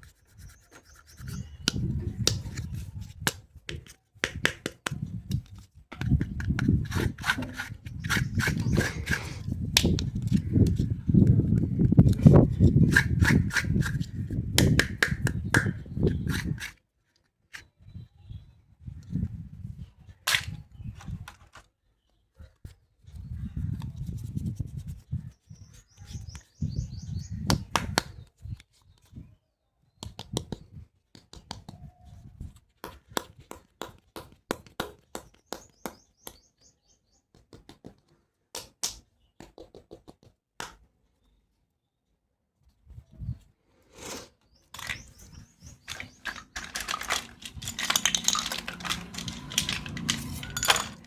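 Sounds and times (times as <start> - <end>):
plastic rubbing and scraping: 0.0 - 16.8, 44.6 - 51.0
plastic toy pieces clicking: 44.7 - 51.0.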